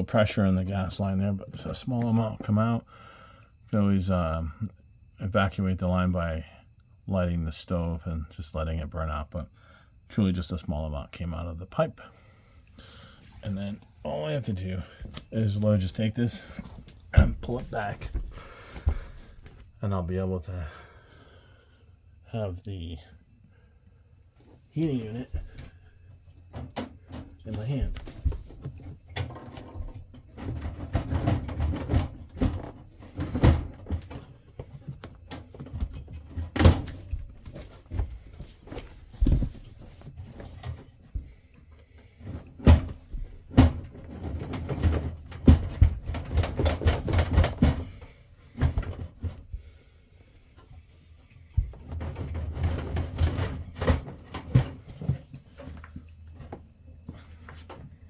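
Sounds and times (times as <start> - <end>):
metal furnace knocks and clunks: 17.2 - 19.2, 26.5 - 38.2, 42.5 - 49.4.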